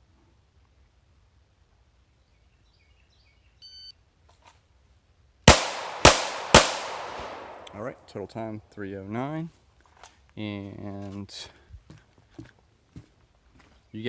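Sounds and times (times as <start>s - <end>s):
pistol shots: 5.5s - 7.9s.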